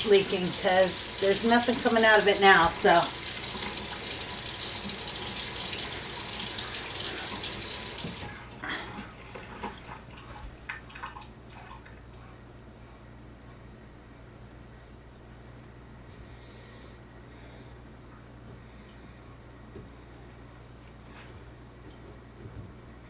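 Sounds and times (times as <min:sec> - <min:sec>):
faucet running water into sink: 0:00.0 - 0:08.4.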